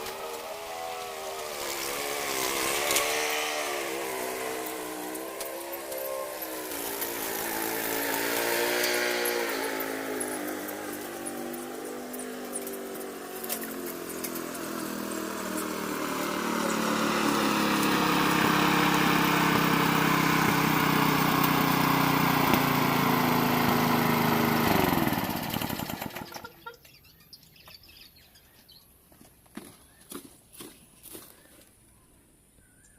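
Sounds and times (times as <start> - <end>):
lawn mower engine running: 0.0 - 26.8.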